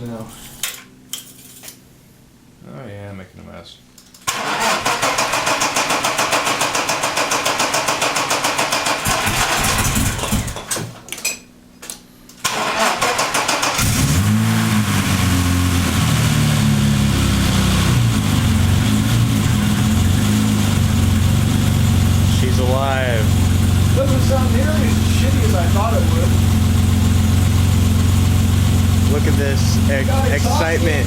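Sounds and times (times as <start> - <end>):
engine starter cranking: 4.1 - 10.7, 12.4 - 14.3
car engine running: 13.6 - 31.0.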